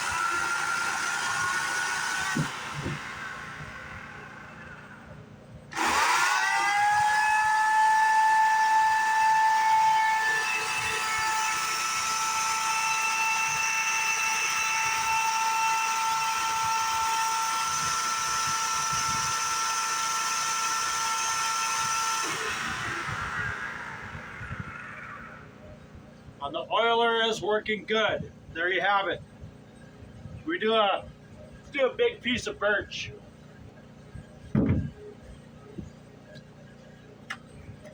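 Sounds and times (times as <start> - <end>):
electric chainsaw motor whining: 0.0 - 5.1, 5.7 - 25.7.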